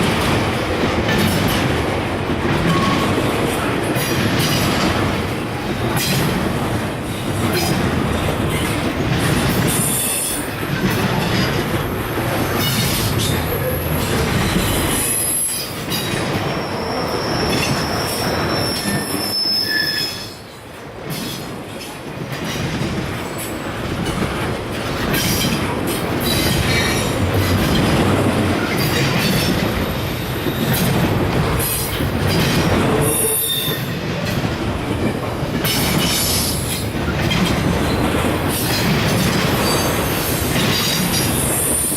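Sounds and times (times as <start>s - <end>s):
train wheels rumbling on rails: 0.0s - 41.9s
high-pitched wheel squeal: 16.5s - 20.4s.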